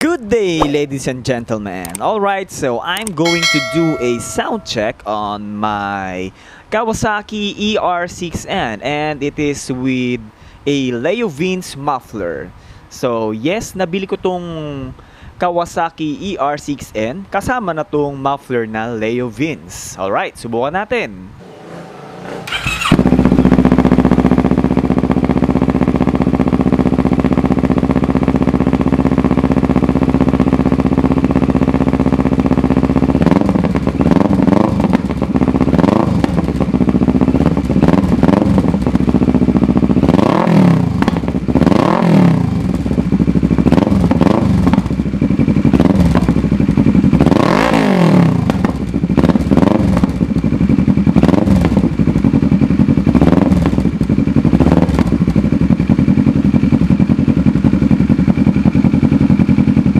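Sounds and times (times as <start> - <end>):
motorcycle engine revving: 21.4 - 59.9
motorcycle engine idling: 22.5 - 47.4, 48.4 - 59.9.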